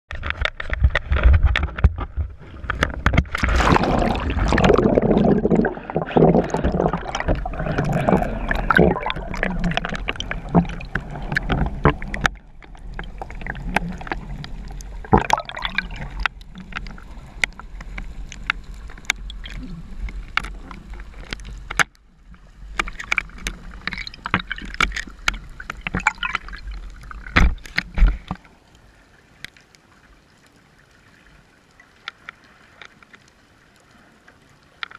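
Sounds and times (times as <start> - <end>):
water sloshing and gurgling: 0.1 - 34.9
sharp knocks and clicks: 22.7 - 26.5, 27.3 - 28.4.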